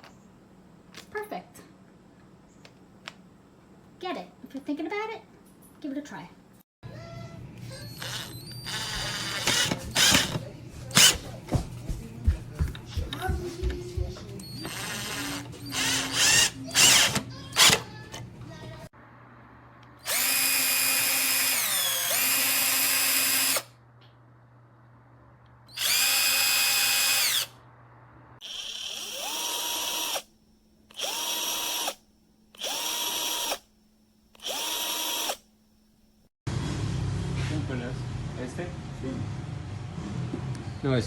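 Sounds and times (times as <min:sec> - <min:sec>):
power tool motor spinning: 0:07.8 - 0:11.2, 0:14.4 - 0:17.8, 0:20.0 - 0:23.7, 0:25.7 - 0:27.5, 0:28.4 - 0:30.3, 0:30.9 - 0:32.0, 0:32.6 - 0:33.7, 0:34.3 - 0:35.5.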